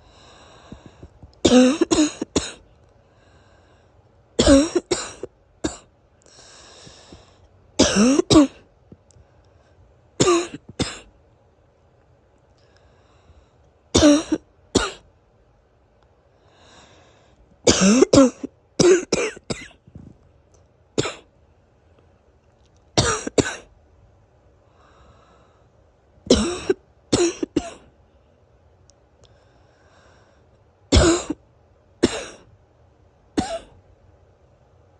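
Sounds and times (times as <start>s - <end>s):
faint breaths: 0.0s - 1.4s, 2.9s - 4.2s, 6.2s - 7.7s, 12.5s - 13.9s, 16.2s - 17.6s, 24.5s - 26.0s, 29.2s - 30.8s
person coughing wheezily: 1.4s - 2.6s, 4.4s - 5.9s, 7.8s - 8.6s, 10.2s - 11.1s, 14.0s - 15.0s, 17.7s - 19.8s, 21.0s - 21.3s, 23.0s - 23.7s, 26.3s - 27.9s, 30.9s - 31.4s, 32.0s - 32.5s, 33.4s - 33.8s.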